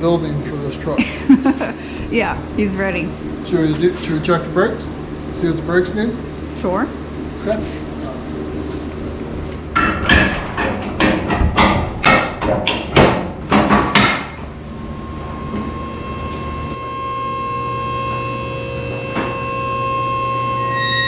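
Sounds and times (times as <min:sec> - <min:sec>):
sharp knocks: 0:09.7 - 0:14.4.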